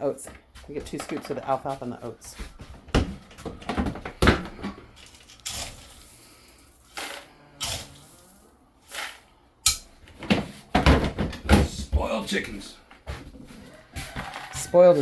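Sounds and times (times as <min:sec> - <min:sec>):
scoop scraping a container: 0:05.4 - 0:09.4.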